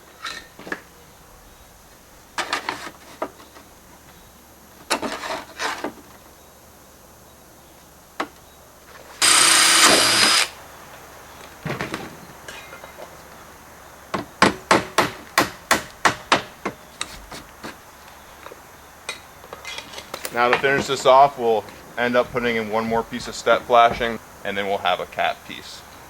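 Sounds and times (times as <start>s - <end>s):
loud harsh noise: 9.2s - 10.6s
slate knocking and scraping: 19.7s - 24.6s.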